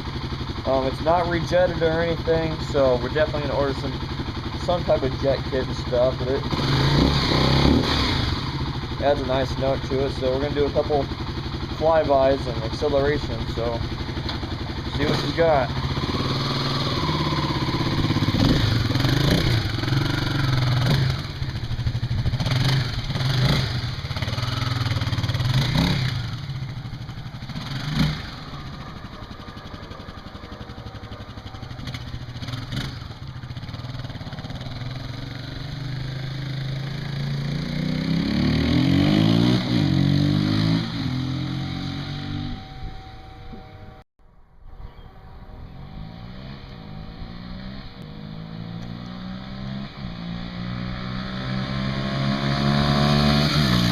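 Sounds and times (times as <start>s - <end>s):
motorcycle engine revving: 0.0s - 44.0s, 45.4s - 53.9s
motorcycle passing by: 11.9s - 43.6s, 45.2s - 53.9s.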